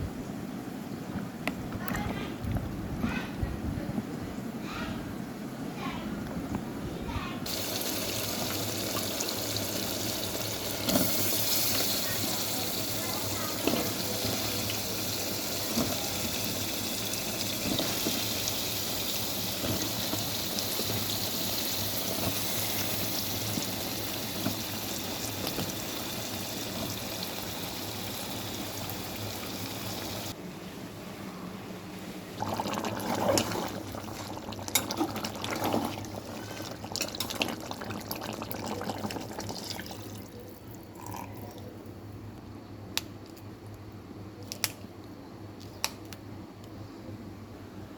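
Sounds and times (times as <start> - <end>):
water running: 7.5 - 30.4, 32.4 - 41.7.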